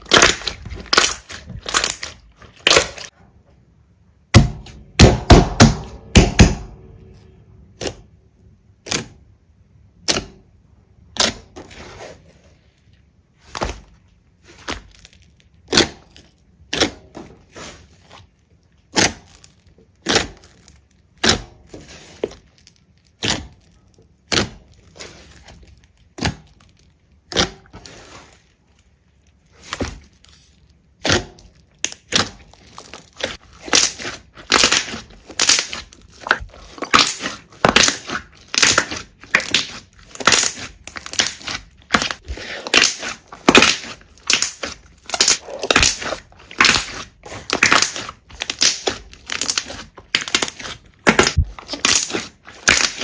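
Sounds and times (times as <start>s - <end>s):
slime popping and crackling: 0.0s - 3.1s, 29.6s - 53.0s.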